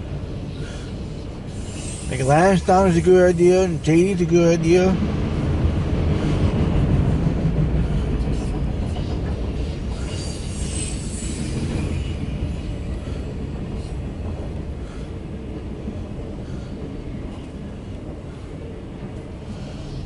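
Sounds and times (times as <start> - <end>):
train wheels rumbling on rail: 0.0 - 20.0
high wheel squeal: 1.5 - 3.7, 8.9 - 13.3.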